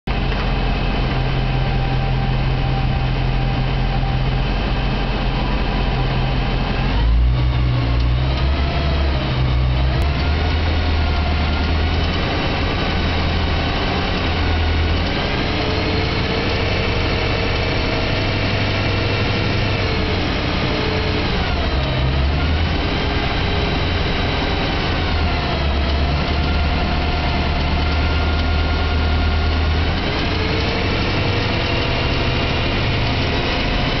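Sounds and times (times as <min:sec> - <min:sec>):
car engine idling: 0:00.0 - 0:34.0
engine clicking noise: 0:06.8 - 0:34.0.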